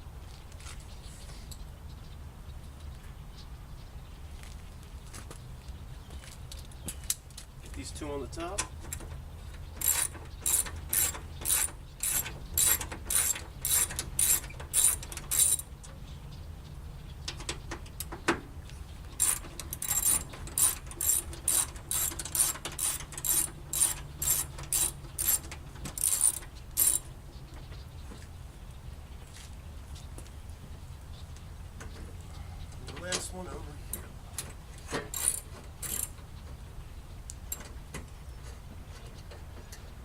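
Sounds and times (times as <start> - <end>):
socket ratchet clicking: 9.8 - 15.7, 19.2 - 27.0.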